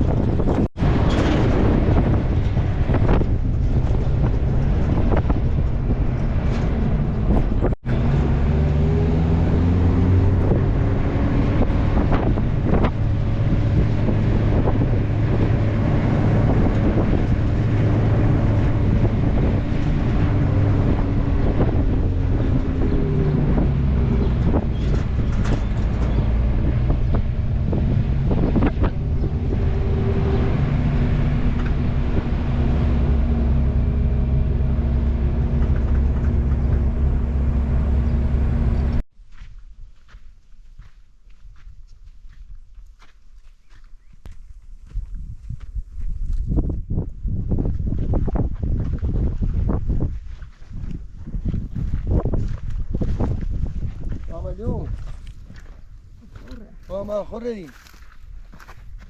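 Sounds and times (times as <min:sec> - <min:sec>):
car engine running: 0:00.0 - 0:39.0
road rumble: 0:00.0 - 0:39.1, 0:43.6 - 0:59.0
wind buffeting microphone: 0:00.0 - 0:40.1, 0:40.7 - 0:59.0.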